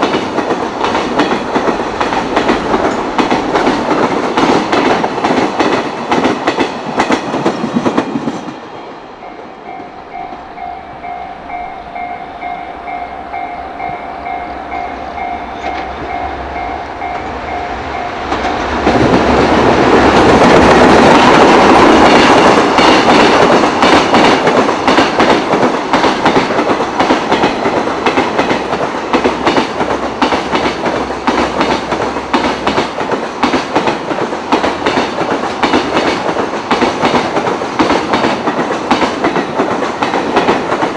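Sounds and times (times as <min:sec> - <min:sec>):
train wheels clattering over rail joints: 0:00.0 - 0:08.6, 0:17.9 - 0:40.9
level-crossing bell dinging: 0:09.2 - 0:19.1.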